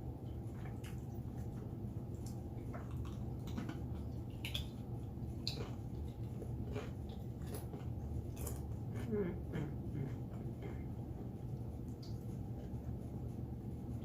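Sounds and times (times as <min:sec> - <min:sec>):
steady low hum: 0:00.0 - 0:14.0
person chewing food: 0:00.1 - 0:14.0
wet mouth clicks and smacks: 0:02.2 - 0:04.8.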